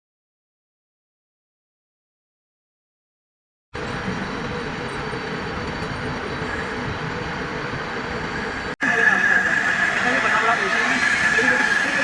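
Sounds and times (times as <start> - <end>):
lathe running: 3.8 - 12.0.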